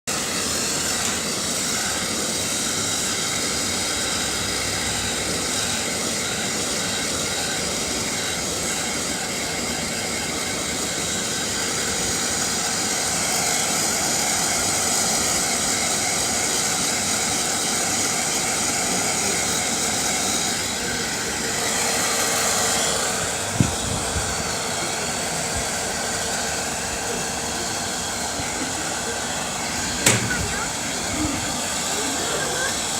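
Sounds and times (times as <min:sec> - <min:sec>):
hair dryer blowing: 0:00.1 - 0:32.9
short knock: 0:30.0 - 0:30.4.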